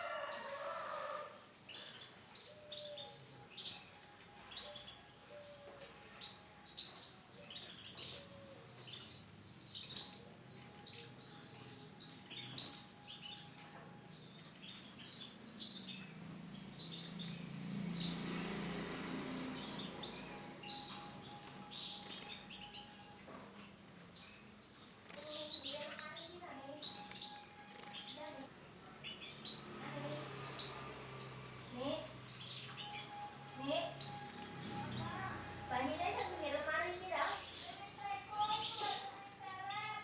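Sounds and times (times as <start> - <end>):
canary chirping: 0.0 - 40.0.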